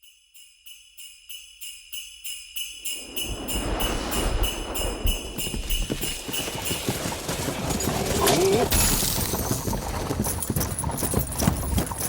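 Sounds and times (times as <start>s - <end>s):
sleigh bells jingling: 0.0s - 12.0s
low rumbling noise: 3.0s - 7.2s.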